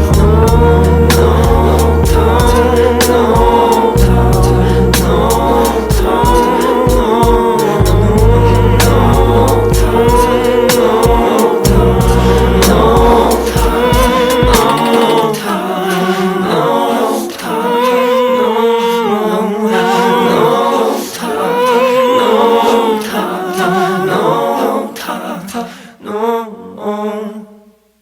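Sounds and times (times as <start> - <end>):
steady low note: 0.0 - 14.8
layered sung vocals: 0.0 - 28.0.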